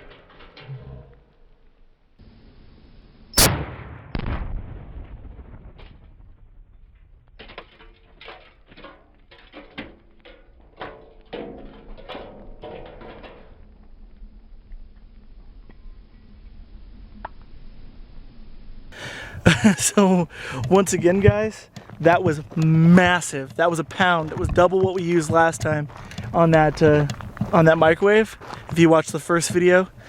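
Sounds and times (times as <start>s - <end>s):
rifle shot: 3.4s - 7.4s
explosion boom: 3.4s - 7.7s.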